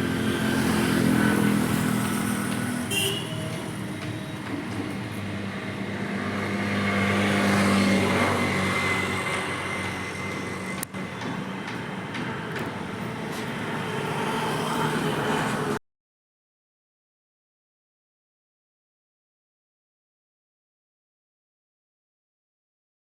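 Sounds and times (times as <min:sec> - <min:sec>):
vehicle engine humming: 0:00.0 - 0:15.8.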